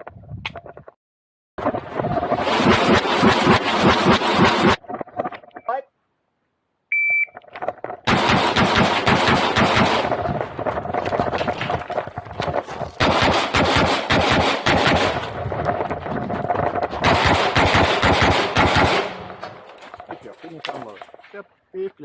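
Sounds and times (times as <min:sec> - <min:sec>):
shot timer beep: 0:06.9 - 0:07.4
pistol firing fast shots: 0:08.1 - 0:11.3, 0:13.0 - 0:15.6, 0:16.8 - 0:19.8.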